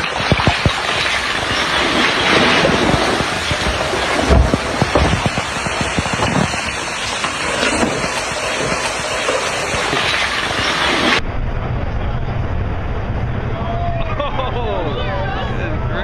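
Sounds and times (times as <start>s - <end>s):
low thuds and cracks: 0.0s - 11.2s
rumble of sliding earth: 0.0s - 16.0s.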